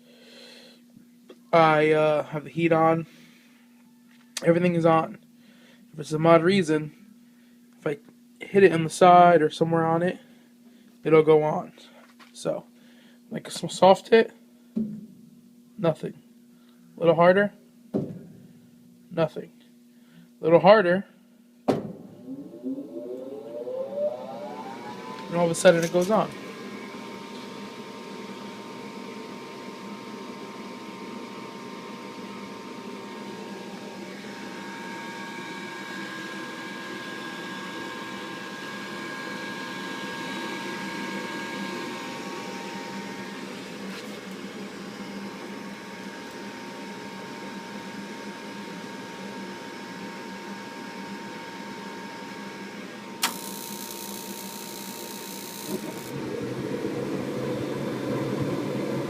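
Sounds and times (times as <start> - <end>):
furnace motor hum: 19.7 - 59.0
burners igniting with low rush: 21.8 - 27.2.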